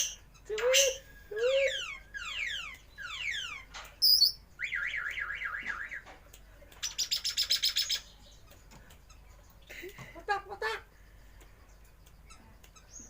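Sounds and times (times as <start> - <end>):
bird calling: 0.0 - 6.0.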